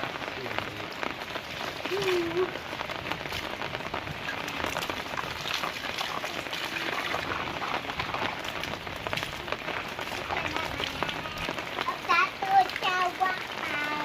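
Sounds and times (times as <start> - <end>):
rain spattering on surfaces: 0.0 - 14.0.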